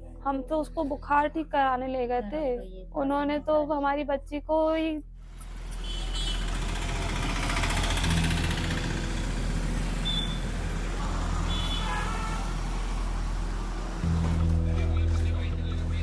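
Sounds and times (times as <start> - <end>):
vehicle engines running: 5.3 - 16.0.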